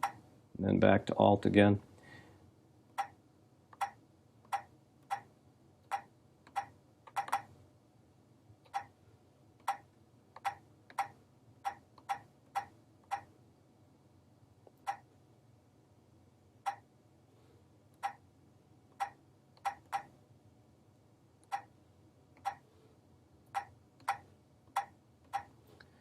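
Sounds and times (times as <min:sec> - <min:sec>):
touchscreen key press clicks: 0:05.9 - 0:07.5.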